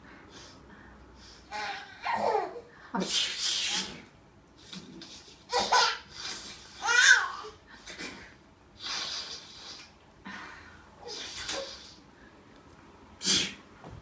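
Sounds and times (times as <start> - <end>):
baby laughing: 1.5 - 2.6, 5.0 - 7.9
adult sneezing loudly: 13.2 - 13.6.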